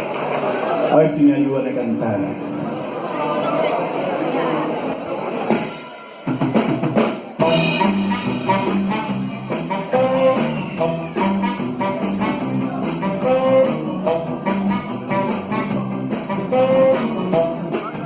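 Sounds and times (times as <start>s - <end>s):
drum kit beat: 5.5s - 18.0s
bass: 6.6s - 18.0s.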